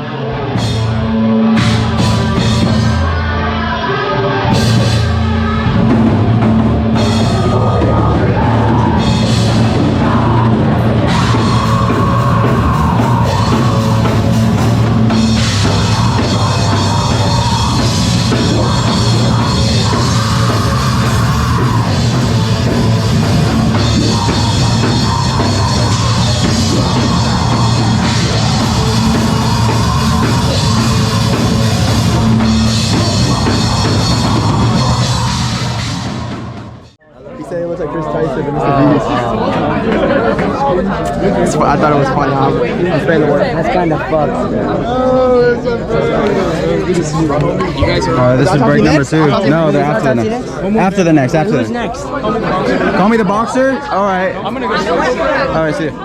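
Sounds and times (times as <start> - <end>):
drum kit: 0.0 - 37.0
heavy rock band playing: 0.0 - 37.0, 47.6 - 51.2.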